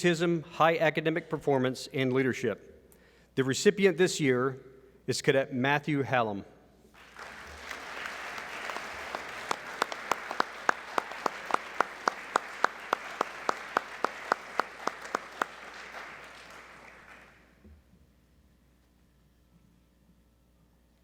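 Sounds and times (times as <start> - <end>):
audience applauding: 7.0 - 17.6
sharp rhythmic claps close by: 7.0 - 17.6.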